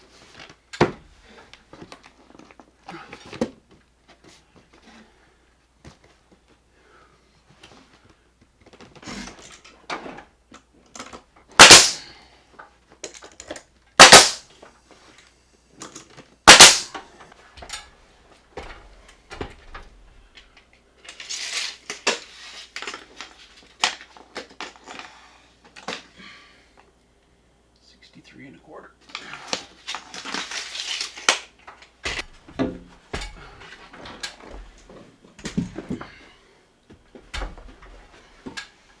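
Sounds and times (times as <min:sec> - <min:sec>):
knocks and clatter of tools and wood: 0:00.2 - 0:05.1, 0:07.6 - 0:26.1, 0:29.0 - 0:39.0
loud sharp bangs: 0:11.6 - 0:12.0, 0:14.0 - 0:14.4, 0:16.5 - 0:16.9.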